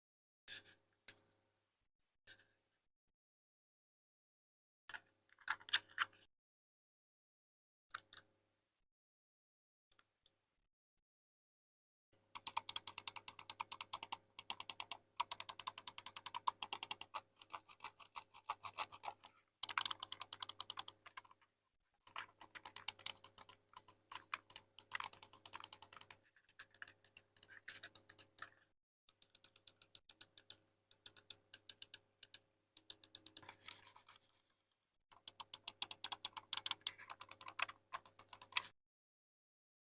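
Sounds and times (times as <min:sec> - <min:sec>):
mouse buttons clicking: 0:12.4 - 0:17.6, 0:19.6 - 0:21.3, 0:22.1 - 0:28.5, 0:35.1 - 0:38.7.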